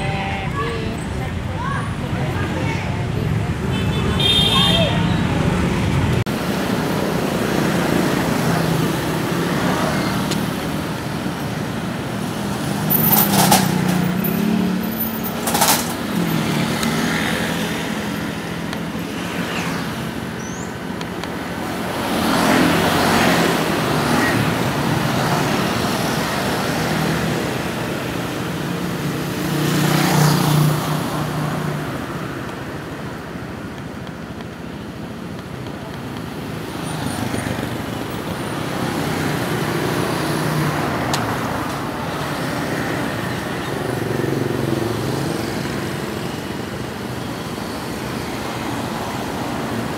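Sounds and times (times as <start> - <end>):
heavy vehicles passing: 0.0 - 49.9.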